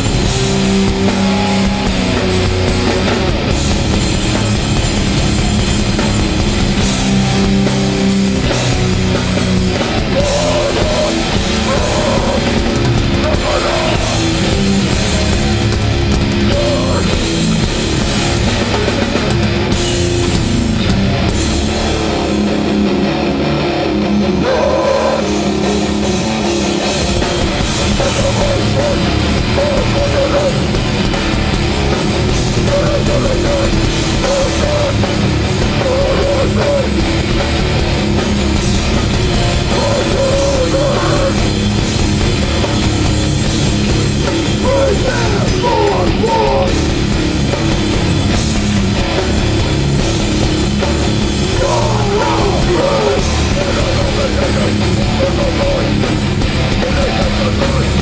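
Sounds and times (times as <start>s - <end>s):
distorted electric guitars: 0.0s - 58.0s
live hardcore band playing: 0.0s - 58.0s
pounding drum kit: 0.0s - 58.0s.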